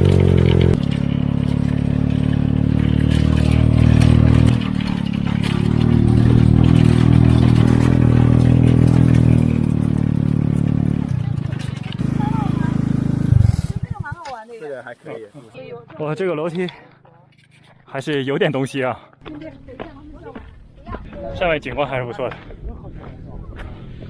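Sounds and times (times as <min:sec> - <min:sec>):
go-kart engine under load: 0:00.0 - 0:14.4.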